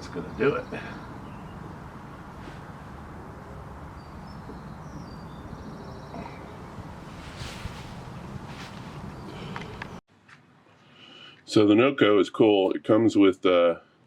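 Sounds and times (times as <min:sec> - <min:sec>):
steady low rumble: 0:01.0 - 0:10.0
faint bird chirps: 0:04.0 - 0:06.8.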